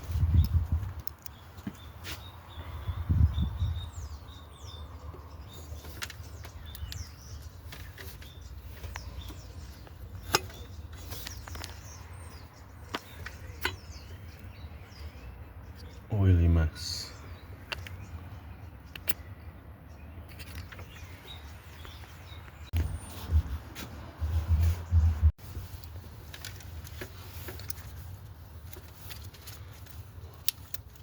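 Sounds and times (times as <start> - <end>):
small birds chirping: 0.0 - 31.0
sharp clicks: 18.8 - 19.3.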